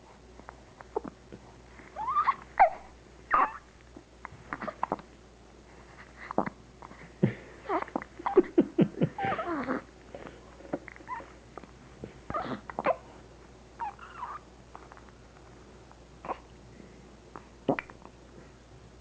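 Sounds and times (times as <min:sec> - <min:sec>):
baby hiccupping: 0:02.0 - 0:03.6, 0:04.5 - 0:05.1, 0:12.3 - 0:13.0, 0:17.6 - 0:18.0
baby whimpering and grunting: 0:07.6 - 0:08.1, 0:09.2 - 0:09.9, 0:12.3 - 0:13.1, 0:13.8 - 0:14.4, 0:16.2 - 0:16.5.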